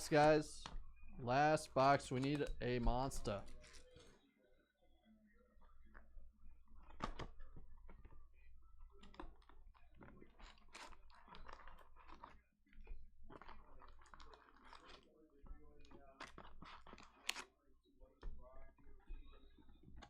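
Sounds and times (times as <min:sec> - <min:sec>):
plastic and foil crinkling: 0:13.3 - 0:17.5.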